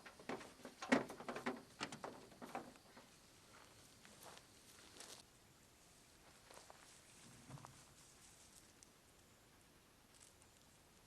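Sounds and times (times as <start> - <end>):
faint background hiss: 0.0 - 11.0.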